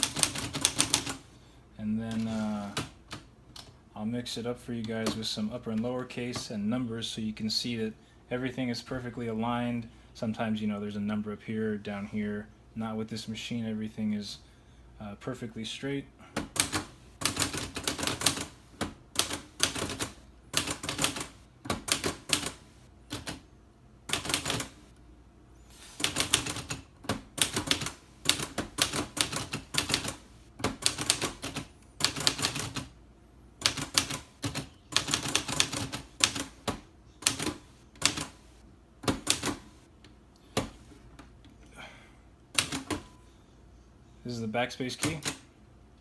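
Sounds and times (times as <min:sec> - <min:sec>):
manual typewriter typing: 0:00.0 - 0:01.2, 0:02.1 - 0:03.7, 0:16.4 - 0:23.4, 0:24.1 - 0:24.9, 0:25.9 - 0:32.9, 0:33.6 - 0:38.4, 0:39.0 - 0:39.8, 0:42.6 - 0:43.2, 0:44.9 - 0:45.4.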